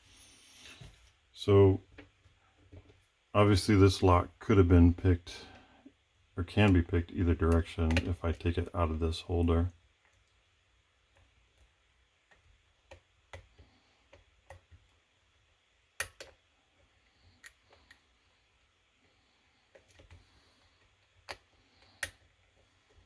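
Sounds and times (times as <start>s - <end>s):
lock pick metallic clicks: 16.0s - 16.4s.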